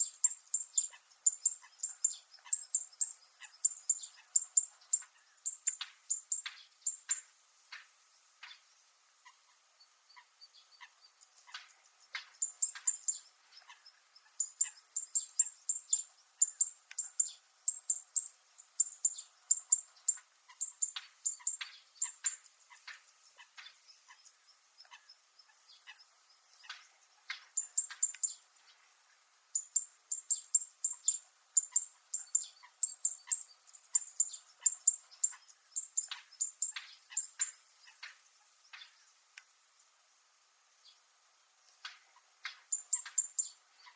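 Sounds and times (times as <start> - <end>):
bird giving sharp metallic calls: 10.2 - 28.4, 29.5 - 38.1, 42.2 - 43.9.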